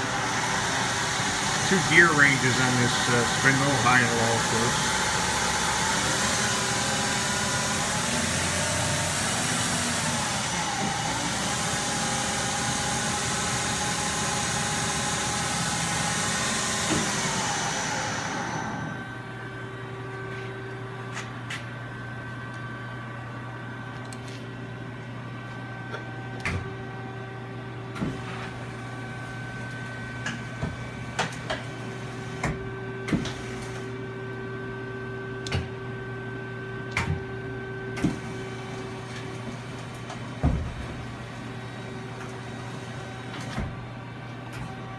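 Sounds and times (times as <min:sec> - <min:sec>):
machine hum: 0:00.0 - 0:05.8
lathe spindle running: 0:00.0 - 0:13.2.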